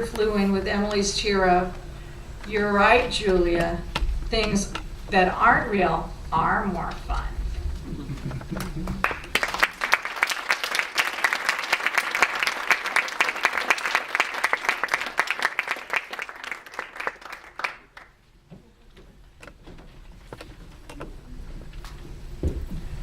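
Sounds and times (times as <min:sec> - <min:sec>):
audience applauding: 0:07.8 - 0:18.2.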